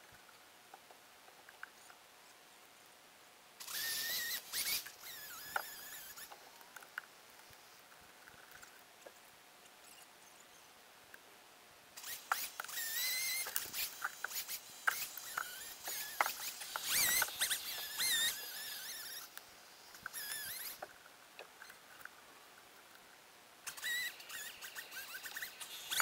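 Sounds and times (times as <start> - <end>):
sped-up chainsaw squeal: 3.6 - 6.3, 12.0 - 20.8, 23.7 - 26.0.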